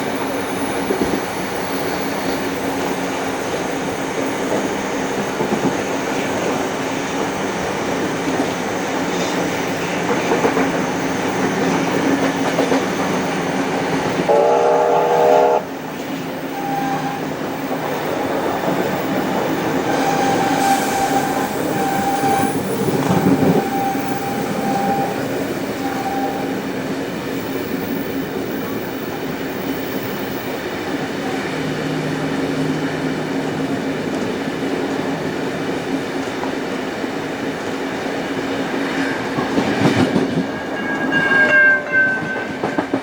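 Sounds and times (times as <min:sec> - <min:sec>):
wheels rumbling on rail: 0:00.0 - 0:43.0
locomotive whistle chord: 0:14.3 - 0:15.7, 0:16.5 - 0:17.3, 0:19.8 - 0:26.6, 0:40.5 - 0:42.8
faint wheel squeal: 0:16.5 - 0:17.3, 0:19.8 - 0:26.6.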